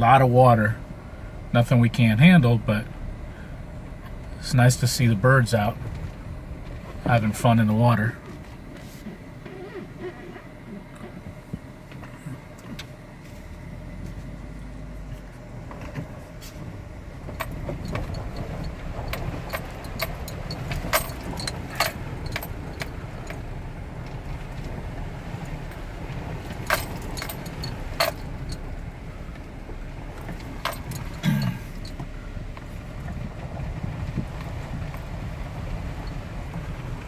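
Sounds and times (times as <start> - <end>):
vehicle rumble from inside cab: 0.0 - 37.0
clicks and rattles over bumps: 15.6 - 37.0.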